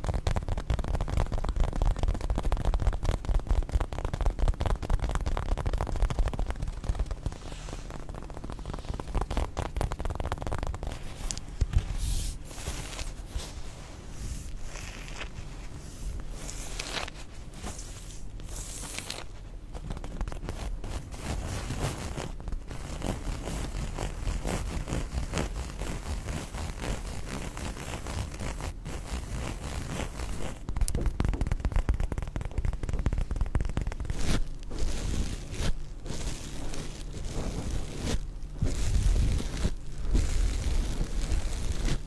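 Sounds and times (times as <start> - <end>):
rough scraping and rubbing: 7.0 - 30.7, 34.1 - 42.0.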